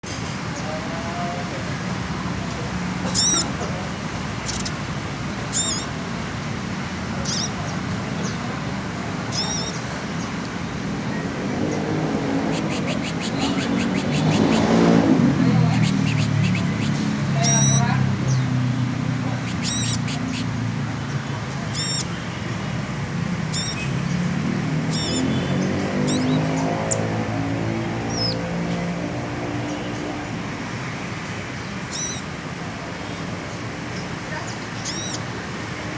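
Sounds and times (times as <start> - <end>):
road traffic: 0.0 - 35.9
low engine hum: 1.8 - 31.0
sunbird warbling chirps: 3.1 - 3.6, 4.4 - 4.8, 5.5 - 5.9, 7.2 - 8.4, 9.3 - 10.3, 11.6 - 22.2, 23.4 - 28.6, 31.9 - 32.3, 34.8 - 35.2.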